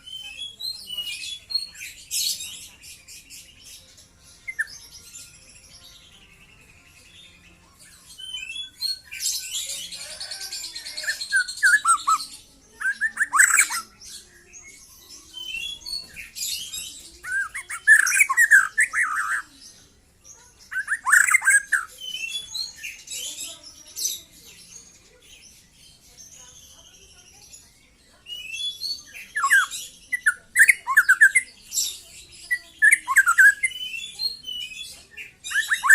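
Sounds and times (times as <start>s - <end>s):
bird whistled song: 0.0s - 7.3s, 8.0s - 19.6s, 20.3s - 23.1s, 28.3s - 35.9s
bird rasping chatter: 8.1s - 14.2s, 15.4s - 19.7s, 20.6s - 24.2s.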